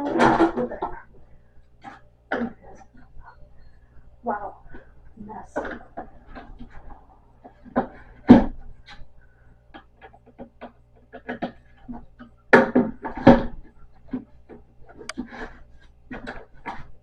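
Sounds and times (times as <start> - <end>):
wooden panels knocking and creaking: 0.0 - 1.2, 4.6 - 17.0.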